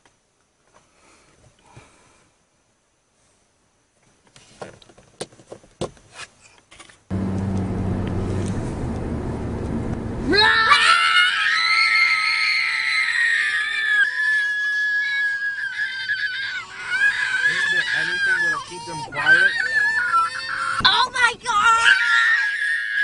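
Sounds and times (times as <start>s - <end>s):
low hum: 7.1s - 10.5s
car cabin rumble: 7.1s - 10.7s
child screaming: 10.3s - 23.0s.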